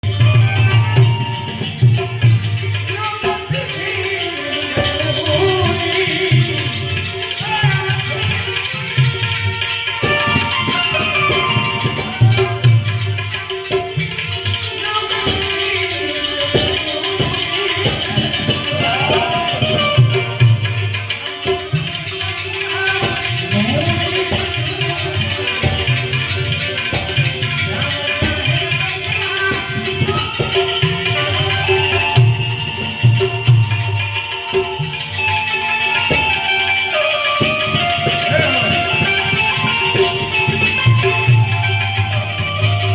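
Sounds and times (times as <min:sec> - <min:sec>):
drum rhythm: 0:00.0 - 0:42.9
jingling hand percussion: 0:00.0 - 0:42.9.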